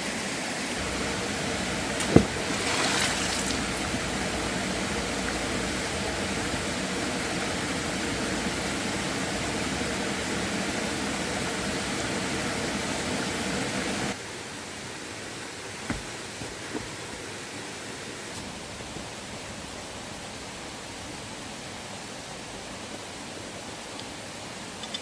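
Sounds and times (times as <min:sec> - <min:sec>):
river water rushing: 0:00.0 - 0:14.2.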